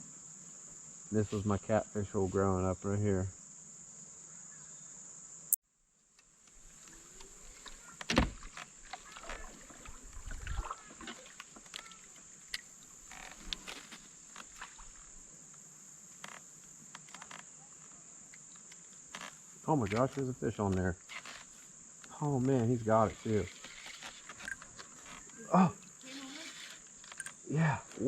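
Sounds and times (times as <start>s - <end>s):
crickets chirring: 0.0s - 28.0s
gear knocking in a kayak: 6.5s - 13.8s.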